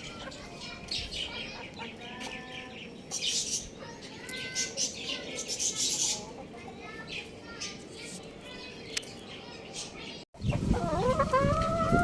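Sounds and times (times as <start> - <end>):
young rooster chirping: 10.4 - 12.0.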